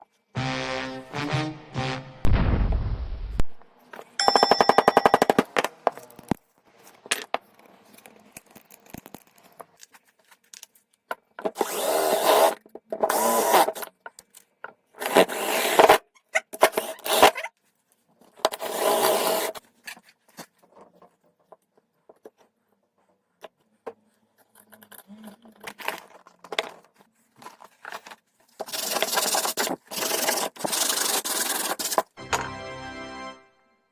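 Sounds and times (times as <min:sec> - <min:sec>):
sandpaper rubbing on wood: 0:28.7 - 0:32.1.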